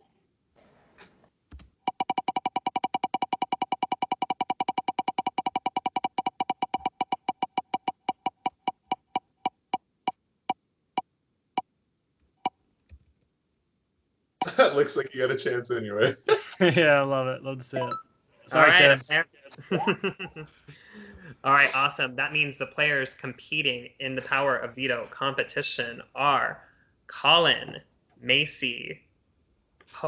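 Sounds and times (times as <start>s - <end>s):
electronic prize wheel ticking: 1.9s - 9.8s.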